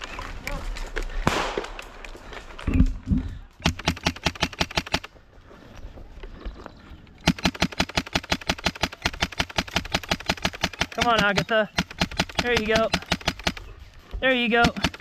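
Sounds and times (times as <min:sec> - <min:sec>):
airsoft rifle firing bursts: 0:03.6 - 0:05.1, 0:07.2 - 0:13.7, 0:14.5 - 0:15.0.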